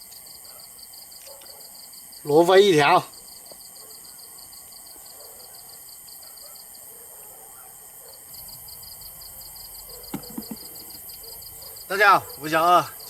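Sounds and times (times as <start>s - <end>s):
insects chirping: 0.0s - 13.0s
steady high hiss: 1.8s - 6.8s.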